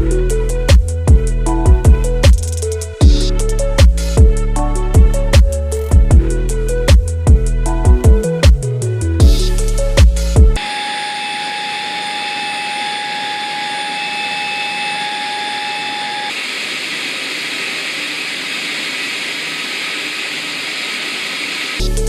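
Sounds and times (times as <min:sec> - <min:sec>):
vacuum cleaner motor whining: 0:10.6 - 0:21.9.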